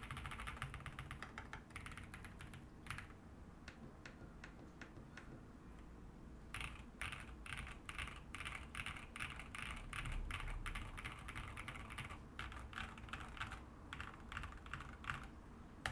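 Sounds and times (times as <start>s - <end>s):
mechanical keyboard typing: 0.0s - 5.4s, 6.5s - 15.9s.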